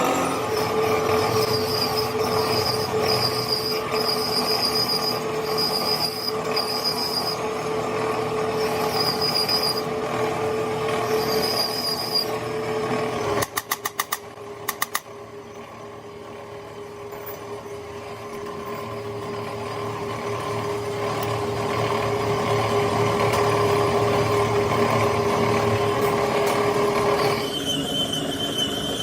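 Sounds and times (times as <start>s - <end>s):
electric power tool running: 0.0s - 4.3s
high squeal: 0.0s - 7.7s, 8.5s - 9.9s, 11.0s - 12.6s, 26.8s - 29.0s.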